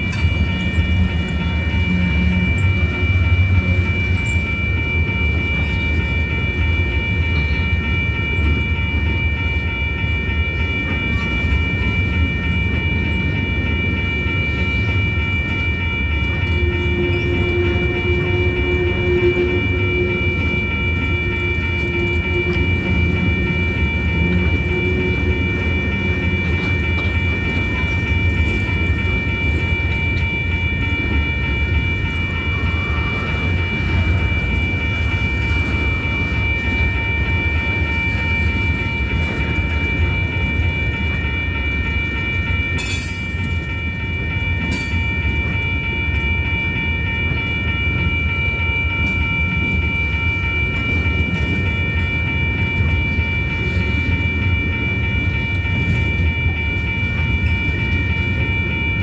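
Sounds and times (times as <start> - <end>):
freight train rumbling past: 0.0 - 59.0
high ringing tone: 0.0 - 59.0.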